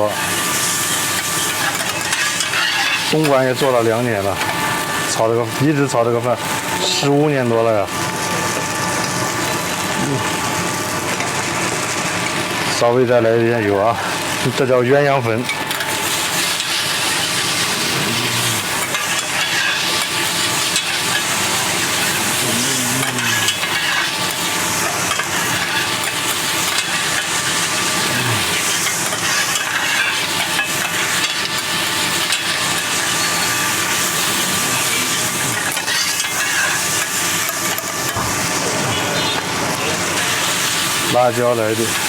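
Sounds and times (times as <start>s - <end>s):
noodles sizzling on griddle: 0.0s - 42.0s
stirring on griddle: 0.0s - 42.0s.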